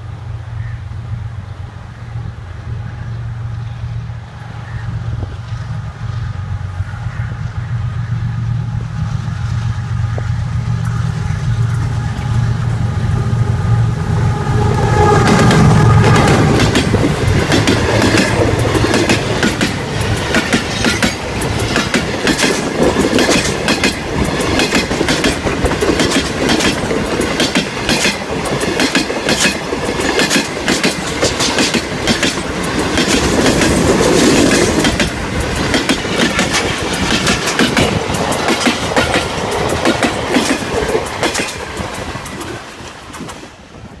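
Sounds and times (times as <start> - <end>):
diesel locomotive engine: 0.0 - 44.0
train wheels clickety-clack: 14.6 - 44.0.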